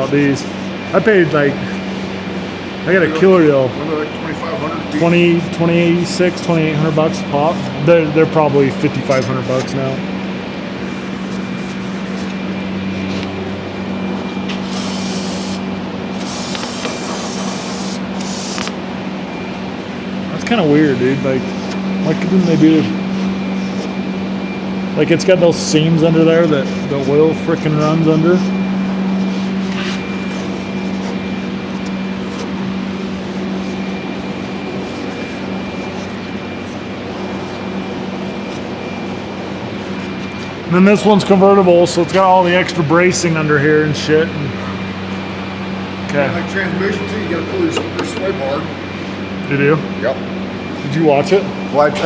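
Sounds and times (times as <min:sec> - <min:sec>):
steady low hum: 0:00.0 - 0:52.0
spraying hiss: 0:14.7 - 0:15.6, 0:16.2 - 0:18.7.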